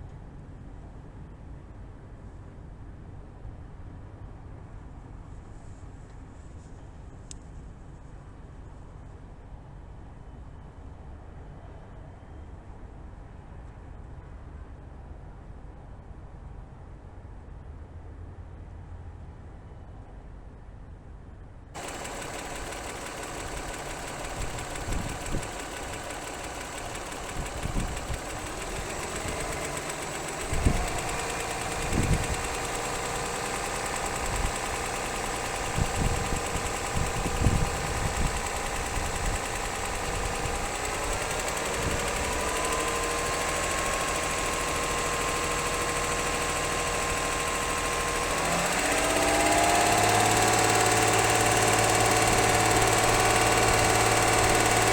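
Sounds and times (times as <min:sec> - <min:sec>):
car engine knocking: 0:21.8 - 0:54.9
engine revving: 0:21.8 - 0:54.9.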